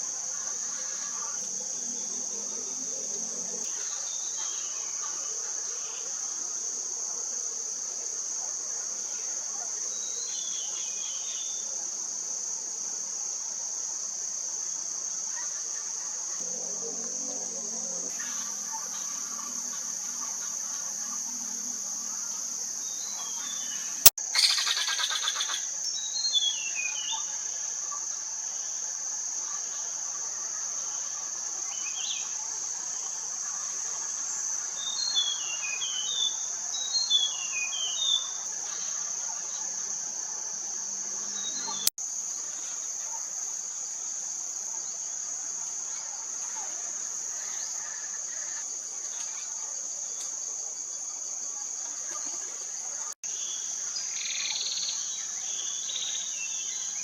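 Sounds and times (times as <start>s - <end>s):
insects droning: 0.0s - 57.0s
bird chirping: 22.9s - 27.3s.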